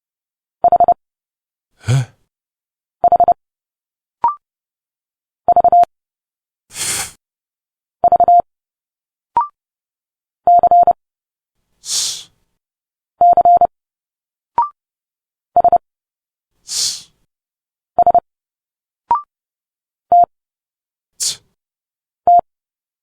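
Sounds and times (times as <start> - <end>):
morse code beeps: 5.5 - 5.9, 13.2 - 13.7, 15.6 - 15.8.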